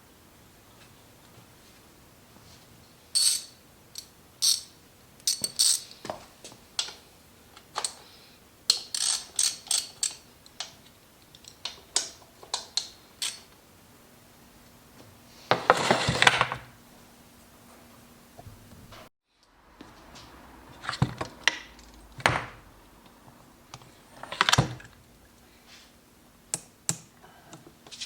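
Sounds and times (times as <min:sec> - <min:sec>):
metal tools clinking: 0:03.2 - 0:04.7, 0:05.3 - 0:06.0.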